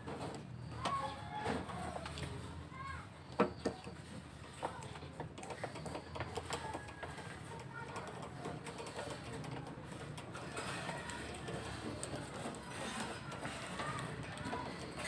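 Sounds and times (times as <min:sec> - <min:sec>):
hand tools clicking on metal parts: 0:03.6 - 0:15.0.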